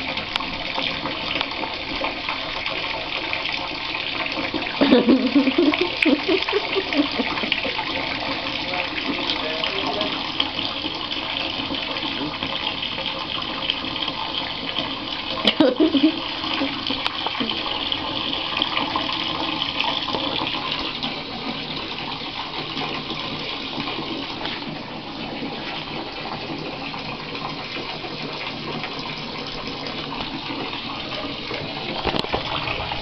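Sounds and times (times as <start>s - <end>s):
tap water pouring into bathtub: 0.0s - 33.0s.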